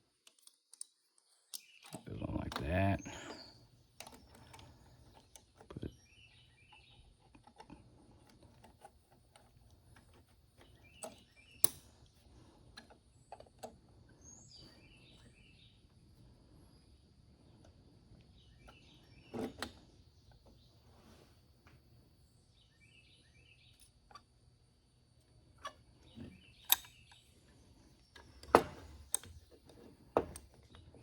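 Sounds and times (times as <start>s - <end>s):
birds chirping: 1.5s - 7.1s.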